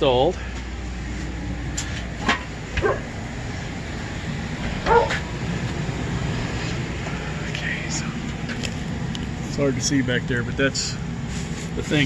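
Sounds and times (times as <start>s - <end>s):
air conditioning hum: 0.0s - 12.0s.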